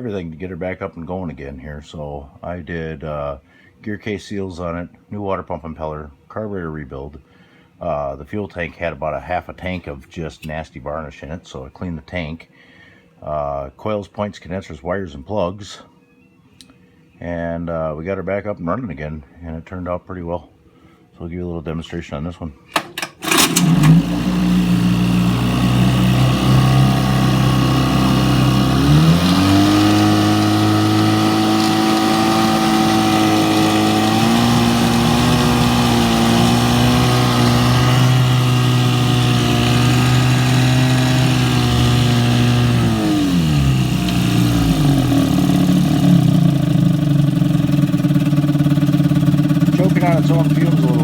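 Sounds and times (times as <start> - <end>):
outboard motor running: 22.8 - 51.0.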